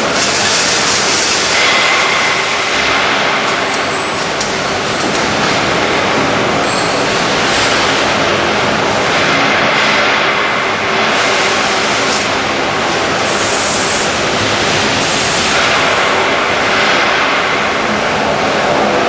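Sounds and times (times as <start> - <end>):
strapping machine running: 0.0 - 17.8.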